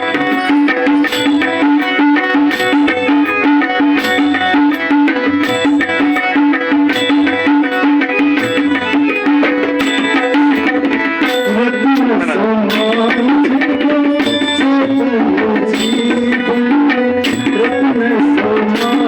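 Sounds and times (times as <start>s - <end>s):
tabla rhythm: 0.0s - 19.0s.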